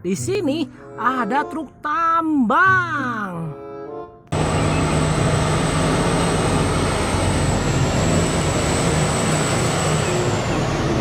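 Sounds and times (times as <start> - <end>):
truck engine running: 4.3 - 11.0.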